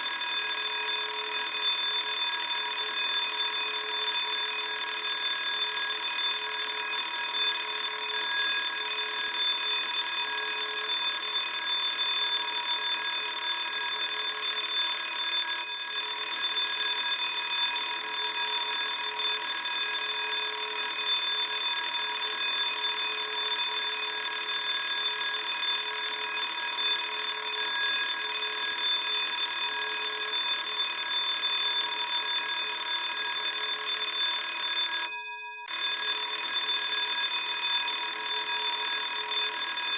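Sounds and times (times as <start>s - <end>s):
school bell ringing: 33.3s - 39.9s.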